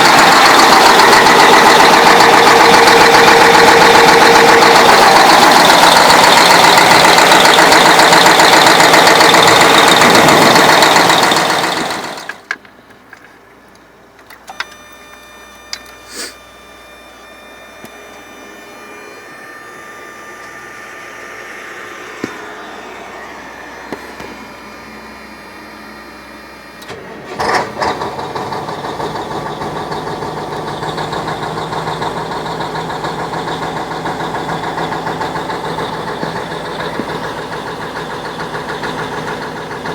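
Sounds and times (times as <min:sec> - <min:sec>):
diesel engine running: 0:00.0 - 0:12.6, 0:14.5 - 0:39.9
clicks: 0:11.8 - 0:16.0
faint whine: 0:14.2 - 0:27.0.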